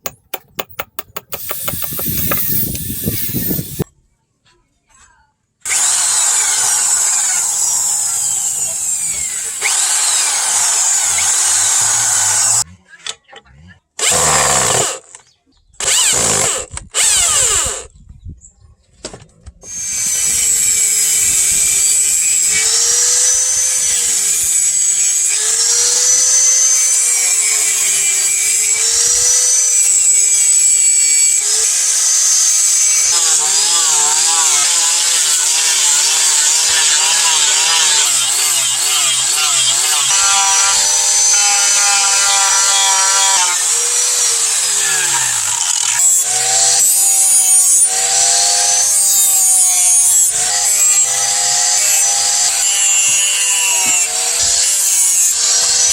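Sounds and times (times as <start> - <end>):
power tool grinding: 0.0 - 3.9, 5.7 - 12.6, 14.0 - 15.2, 15.8 - 17.9, 19.7 - 55.9.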